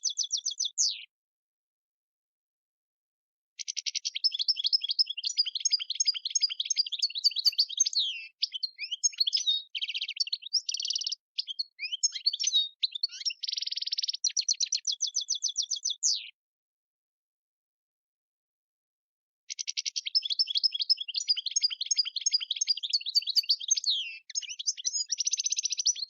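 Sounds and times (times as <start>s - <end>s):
goldfinch singing: 0.0s - 1.1s, 3.6s - 16.4s, 19.5s - 26.0s.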